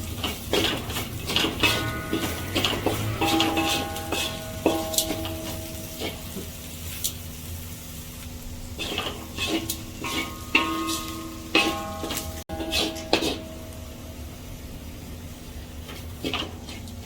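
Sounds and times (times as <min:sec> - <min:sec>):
metal spoon knocking metal pan: 0:00.5 - 0:06.1, 0:10.0 - 0:13.4.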